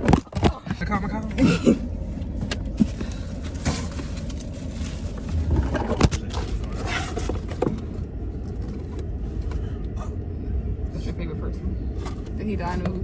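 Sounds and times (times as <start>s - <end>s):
car interior rumble: 0.0s - 13.0s
scrapes: 2.3s - 7.8s.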